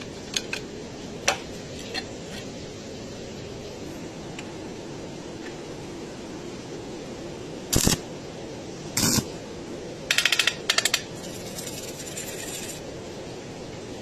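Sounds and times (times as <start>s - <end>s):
metal clinking and tapping: 10.1s - 12.8s.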